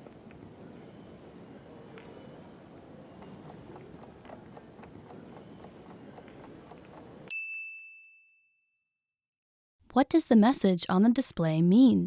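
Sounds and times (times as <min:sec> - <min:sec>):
bright ding: 0:07.3 - 0:08.8.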